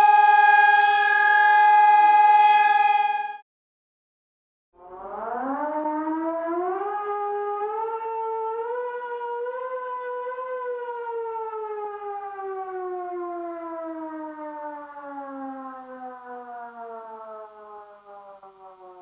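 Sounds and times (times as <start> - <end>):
warning siren winding down: 0.0 - 3.4, 4.8 - 19.0.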